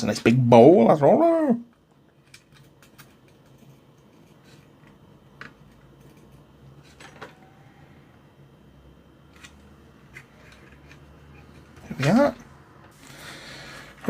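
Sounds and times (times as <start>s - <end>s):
low steady hum: 0.0s - 14.0s
hand tools clicking and tapping: 2.2s - 6.4s.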